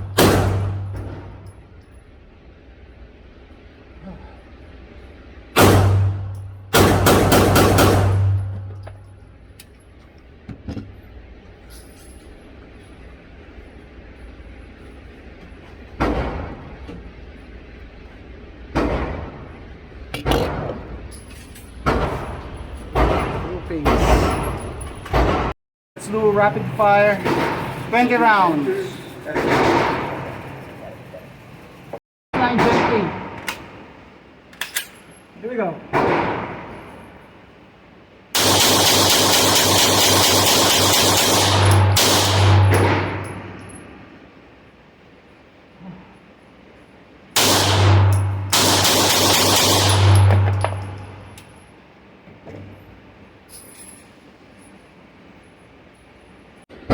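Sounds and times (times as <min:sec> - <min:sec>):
gunshots with echo: 0:00.0 - 0:00.9, 0:05.6 - 0:08.6, 0:38.4 - 0:43.6, 0:47.4 - 0:51.3
pistol shots: 0:00.0 - 0:01.2, 0:05.6 - 0:08.5, 0:38.4 - 0:43.6, 0:47.4 - 0:51.3.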